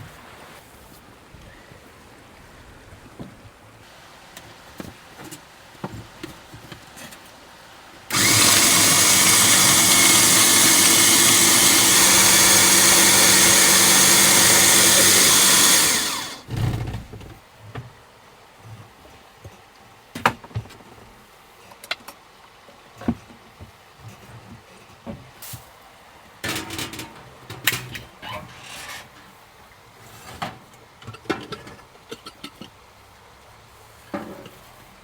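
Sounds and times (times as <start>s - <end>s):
small electric motor running: 8.1s - 16.5s.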